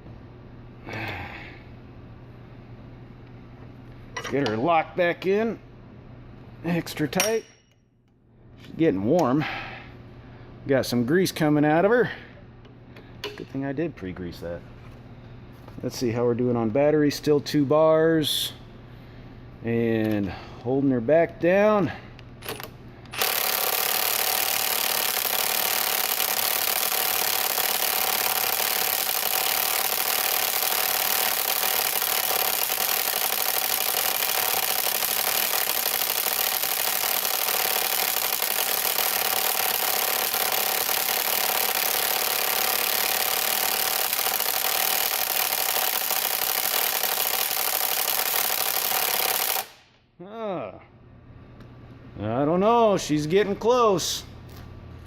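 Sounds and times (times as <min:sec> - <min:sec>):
impact wrench hammering: 0:07.1 - 0:07.8, 0:22.4 - 0:49.8.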